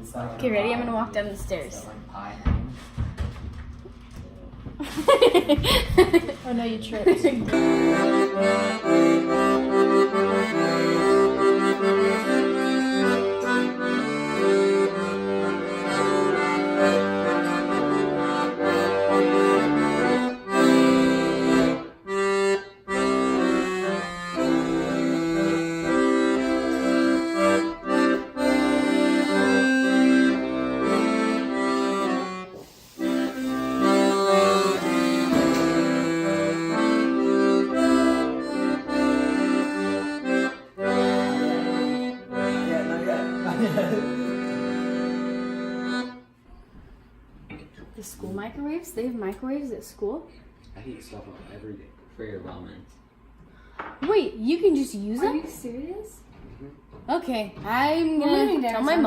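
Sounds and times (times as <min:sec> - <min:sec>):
instrumental music with bass line: 0:07.5 - 0:46.2.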